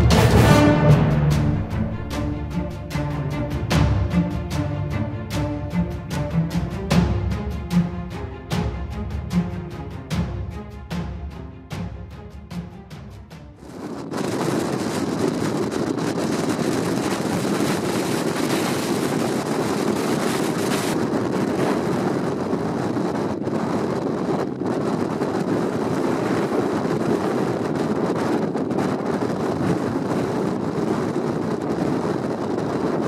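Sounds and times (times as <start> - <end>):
rough sea rushing: 0.0 - 11.2, 13.6 - 33.0
wind buffeting microphone: 0.0 - 33.0.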